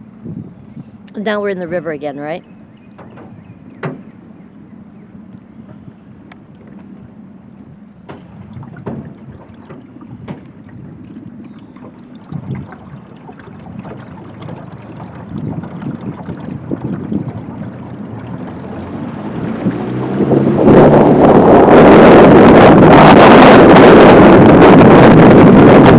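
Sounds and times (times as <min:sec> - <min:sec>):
boat motor running: 0:00.0 - 0:25.9
sharp knocks: 0:02.9 - 0:04.2, 0:08.0 - 0:10.6.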